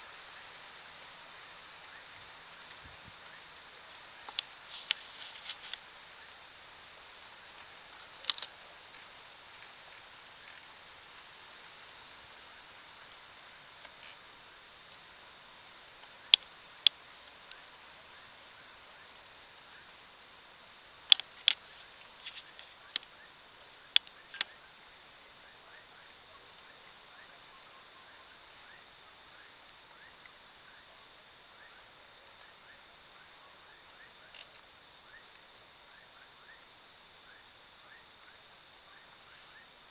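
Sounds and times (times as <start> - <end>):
crickets and insects chirping: 0.0 - 39.9
sharp clicks: 21.1 - 21.6.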